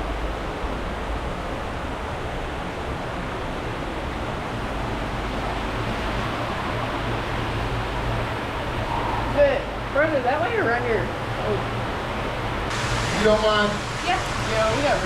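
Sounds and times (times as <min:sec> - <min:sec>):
waterfall rushing: 0:11.1 - 0:15.0.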